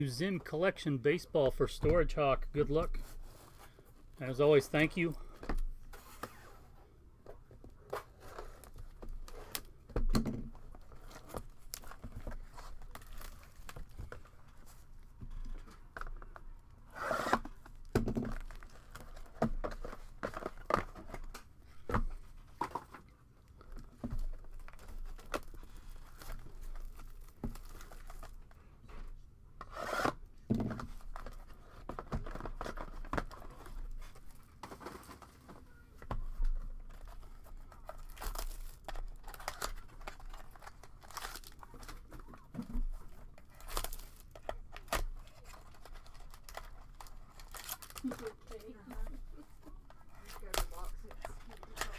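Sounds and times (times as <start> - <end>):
crinkling and cardboard rubbing: 0.2 - 51.9
plastic wrap tearing: 37.7 - 42.2, 43.0 - 51.9.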